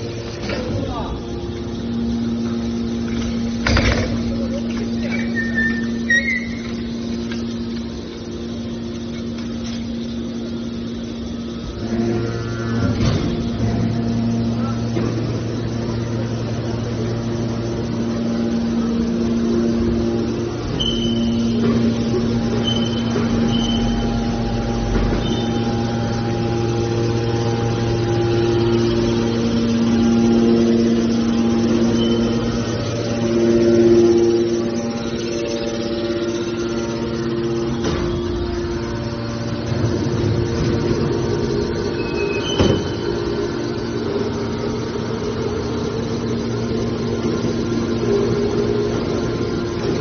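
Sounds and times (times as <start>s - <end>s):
baler machinery humming: 0.0s - 50.0s
deeper hum: 0.0s - 50.0s
high metallic squeal: 5.0s - 7.1s, 20.7s - 45.8s.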